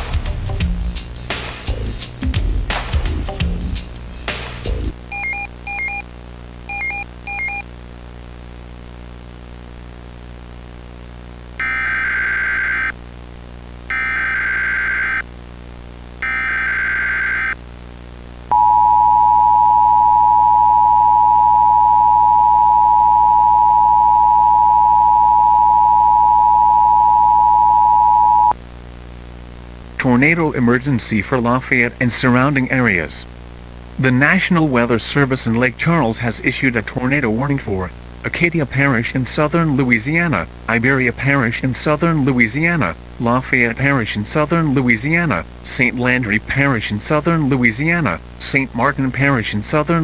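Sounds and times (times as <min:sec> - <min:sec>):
short beeps: 0:05.1 - 0:06.0, 0:06.7 - 0:07.6, 0:18.5 - 0:28.5
two-tone attention signal: 0:18.5 - 0:28.5.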